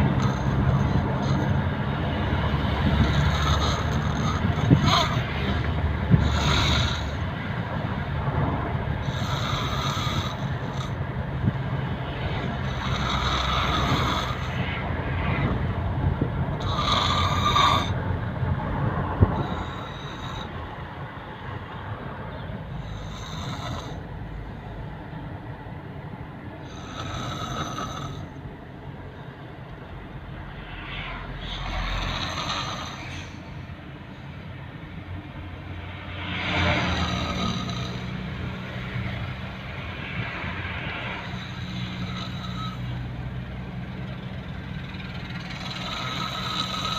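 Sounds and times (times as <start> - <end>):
steady low rumble: 0.0 - 23.1, 27.6 - 46.9
person snoring: 2.8 - 5.6, 6.2 - 7.3, 9.0 - 11.0, 12.6 - 14.6, 16.6 - 18.0, 19.4 - 20.5, 26.7 - 28.3, 31.4 - 33.3, 36.6 - 38.2, 41.2 - 42.9, 45.5 - 46.9.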